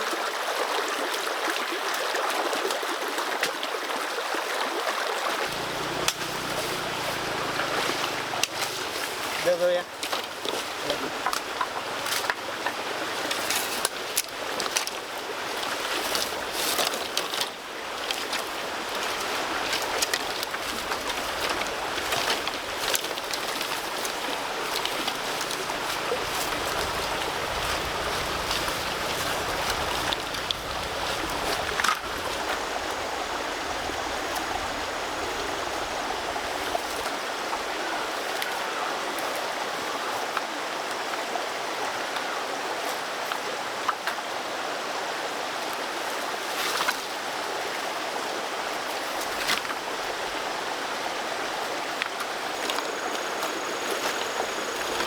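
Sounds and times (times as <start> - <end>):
running water rushing: 0.0 - 55.0.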